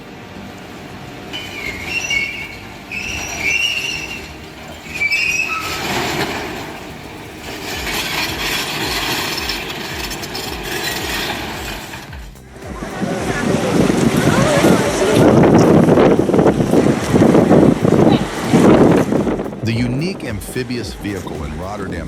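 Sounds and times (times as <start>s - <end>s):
grinding rumble: 0.0s - 22.0s
metal-on-metal squealing: 1.3s - 12.1s
rhythmic low knocking: 1.3s - 22.0s.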